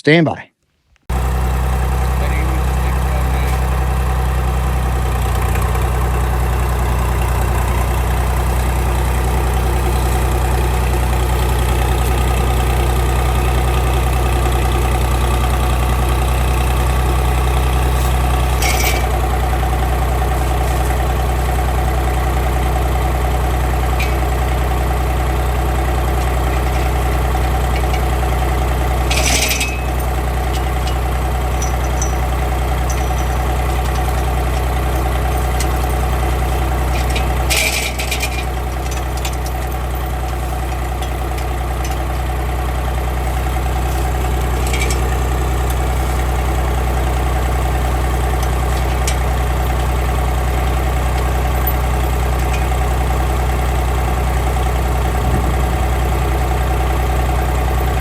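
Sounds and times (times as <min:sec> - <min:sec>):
engine idling: 0:01.1 - 0:58.0.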